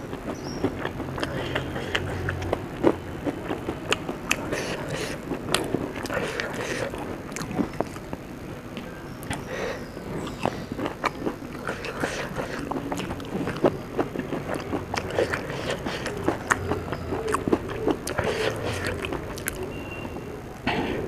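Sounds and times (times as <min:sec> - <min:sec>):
chewing food: 0:00.0 - 0:20.4.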